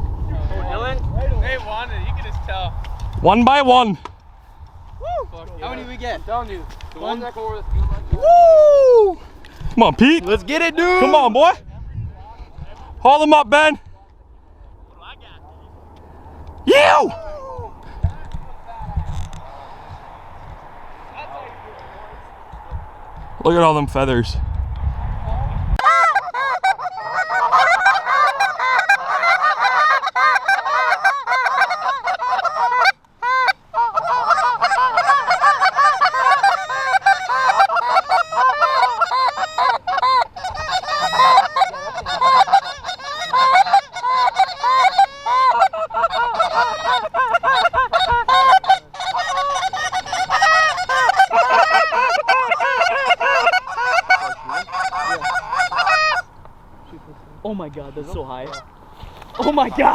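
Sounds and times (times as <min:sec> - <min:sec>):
geese honking: 0:09.8 - 0:11.6, 0:25.8 - 0:56.6, 0:58.0 - 0:59.9.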